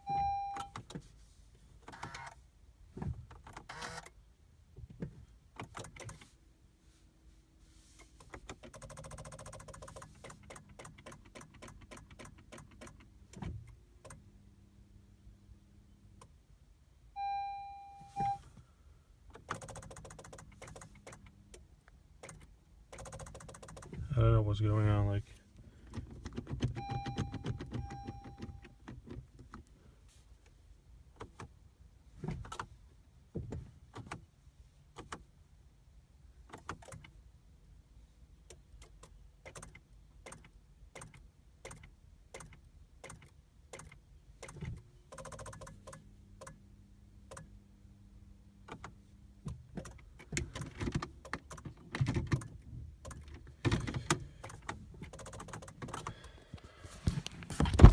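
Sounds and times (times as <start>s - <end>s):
clicks and knocks around a car: 32.1s - 34.3s, 48.7s - 57.9s.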